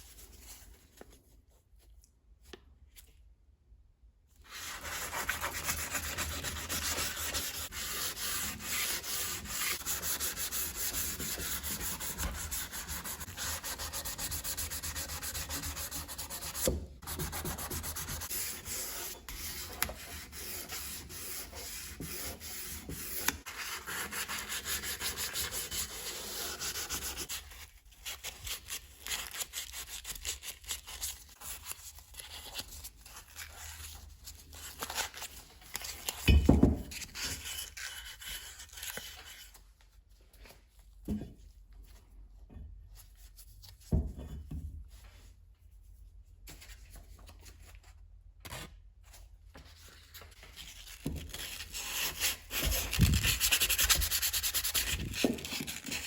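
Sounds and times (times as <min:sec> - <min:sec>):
sanding metal by hand: 0:04.6 - 0:27.3.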